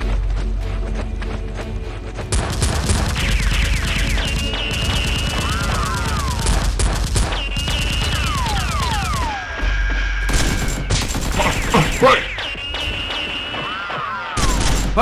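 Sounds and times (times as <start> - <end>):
automatic gunfire sound effects: 2.3 - 9.5, 10.3 - 13.4
falling whistles: 3.2 - 6.5, 7.3 - 14.6.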